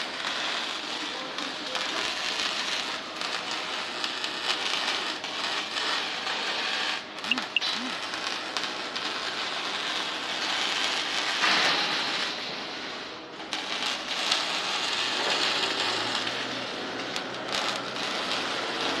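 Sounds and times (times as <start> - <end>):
welding crackling hiss: 0.0 - 19.0
welding pops: 7.1 - 12.3.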